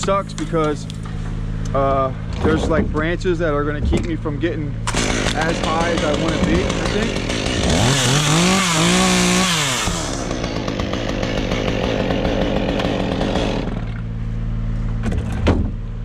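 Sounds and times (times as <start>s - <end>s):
low engine hum: 0.0s - 6.9s, 13.6s - 16.0s
chainsaw revving: 4.8s - 14.0s.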